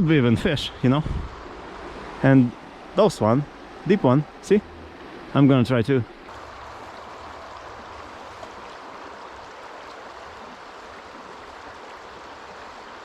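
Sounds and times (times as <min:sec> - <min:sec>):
river water rushing: 0:06.1 - 0:13.0.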